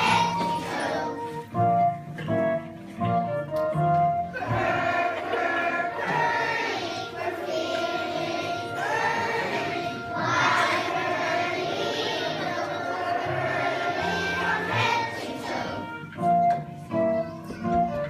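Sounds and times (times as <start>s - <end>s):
children singing: 0.0s - 1.4s, 4.3s - 16.1s
musical accompaniment: 0.0s - 18.0s.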